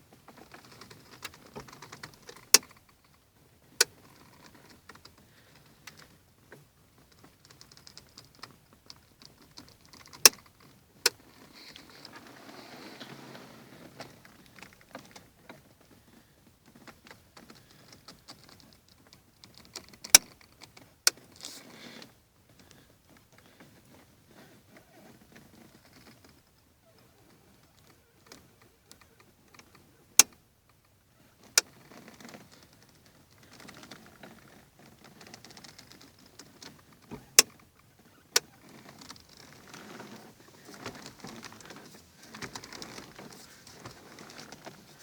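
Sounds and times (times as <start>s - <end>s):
faint rustling and creaking: 0.0s - 45.0s
steering wheel clicking: 7.0s - 12.2s, 16.8s - 21.4s, 25.1s - 30.8s, 31.4s - 45.0s.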